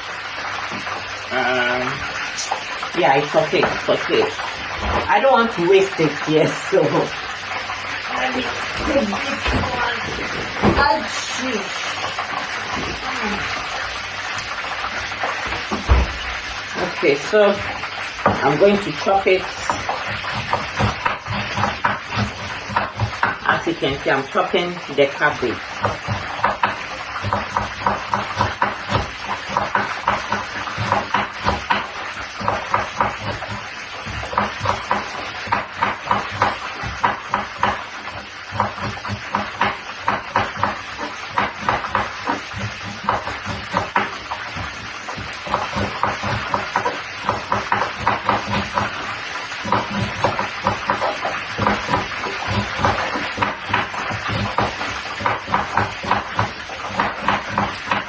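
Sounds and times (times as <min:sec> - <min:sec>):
knife chopping on cutting board: 0:18.2 - 0:23.7, 0:25.6 - 0:58.0.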